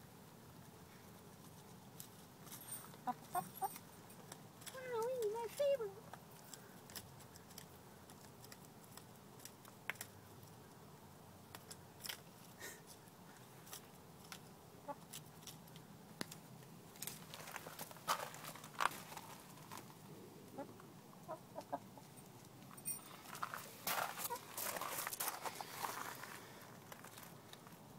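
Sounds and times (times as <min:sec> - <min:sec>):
chicken clucking: 0:03.0 - 0:03.8, 0:20.4 - 0:22.2, 0:24.2 - 0:24.5.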